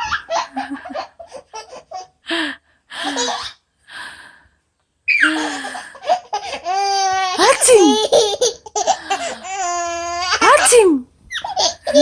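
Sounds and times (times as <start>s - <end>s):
baby laughing: 3.0s - 3.6s, 5.1s - 12.0s.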